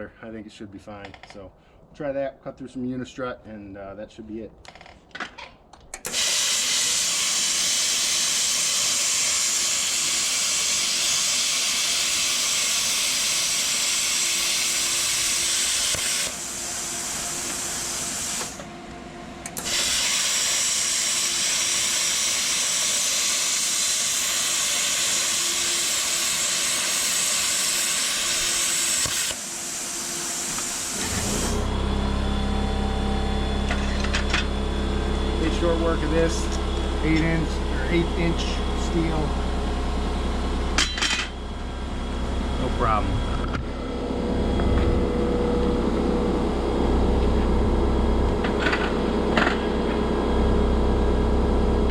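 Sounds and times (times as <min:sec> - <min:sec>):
plasma cutter hissing: 0:06.0 - 0:18.6, 0:19.6 - 0:31.7
low steady hum: 0:31.6 - 0:51.9.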